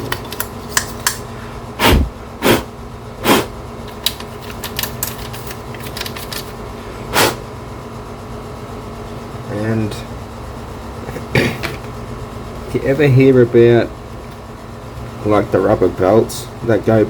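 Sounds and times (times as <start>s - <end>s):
short puffs of air: 1.8s - 3.5s, 7.1s - 7.4s.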